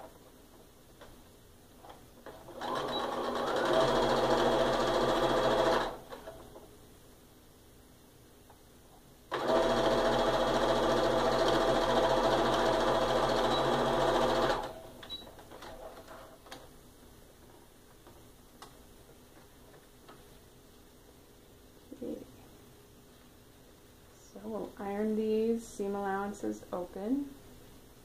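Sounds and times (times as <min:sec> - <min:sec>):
sewing machine stitching: 0:02.2 - 0:06.4, 0:09.3 - 0:14.8.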